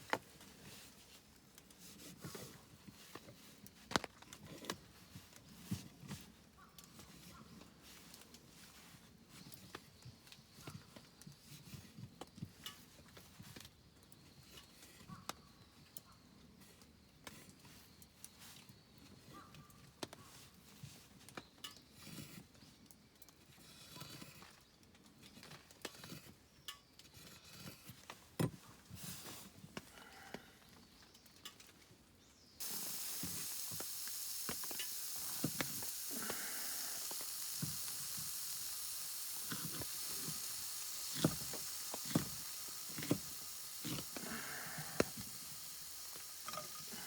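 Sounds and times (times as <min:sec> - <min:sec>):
food sizzling in a pan: 0:32.6 - 0:47.0.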